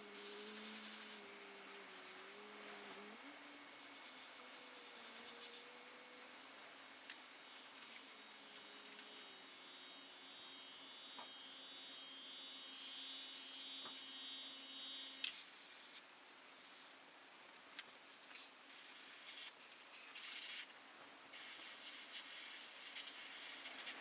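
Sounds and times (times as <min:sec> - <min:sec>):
airbrush spraying: 0:00.1 - 0:01.3, 0:02.8 - 0:03.1, 0:03.8 - 0:05.7, 0:18.7 - 0:19.5, 0:21.4 - 0:24.0.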